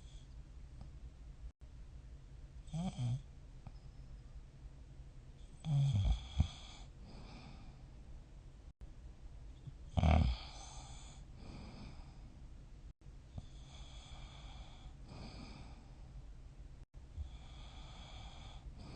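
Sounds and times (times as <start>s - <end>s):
person snoring: 5.6s - 7.8s, 9.9s - 12.2s, 17.2s - 18.9s
raspy breathing: 6.4s - 7.9s, 10.3s - 12.4s, 13.4s - 16.1s, 17.2s - 18.9s.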